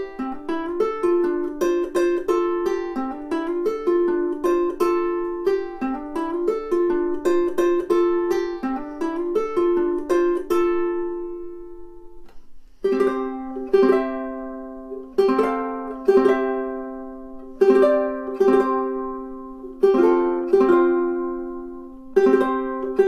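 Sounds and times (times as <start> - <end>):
ukulele plucked notes and chords: 0.0 - 23.0.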